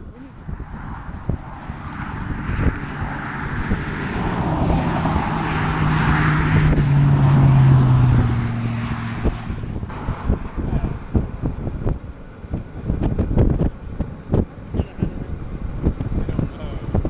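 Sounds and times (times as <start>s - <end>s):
road noise: 0.0s - 17.0s
vehicle engine hum: 0.0s - 17.0s.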